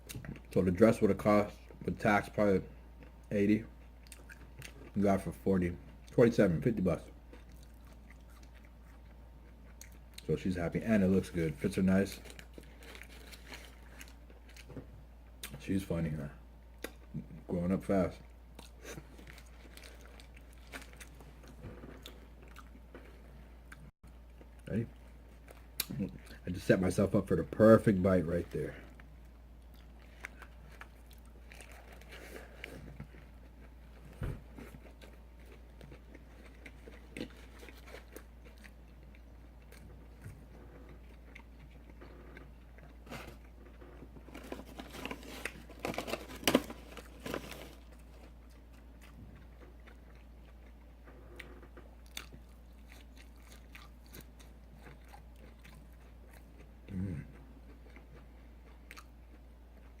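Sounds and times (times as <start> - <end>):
person chewing food: 2.9 - 5.0, 7.2 - 10.3, 12.2 - 15.6, 18.5 - 26.4, 28.8 - 60.0.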